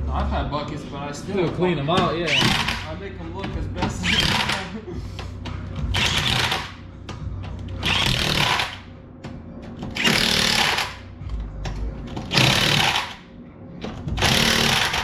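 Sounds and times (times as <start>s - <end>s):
impact wrench spinning: 2.3s - 2.9s, 4.0s - 4.6s, 5.9s - 6.8s, 7.8s - 8.8s, 10.0s - 11.0s, 12.3s - 13.2s, 14.2s - 15.0s.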